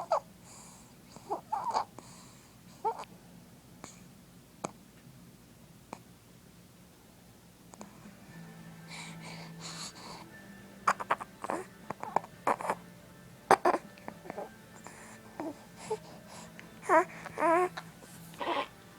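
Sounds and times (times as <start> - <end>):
child breathing hissing breaths: 0.4 - 1.3, 2.0 - 2.8, 8.8 - 10.4, 14.8 - 18.8
child moaning cries: 16.9 - 17.8.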